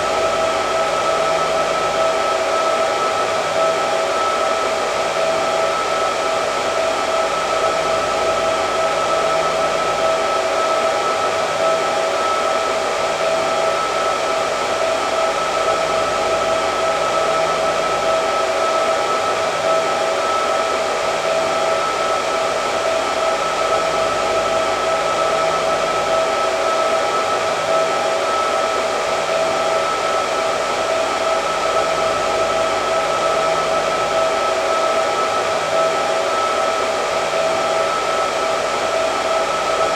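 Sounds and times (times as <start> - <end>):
hair dryer running: 0.0 - 39.9.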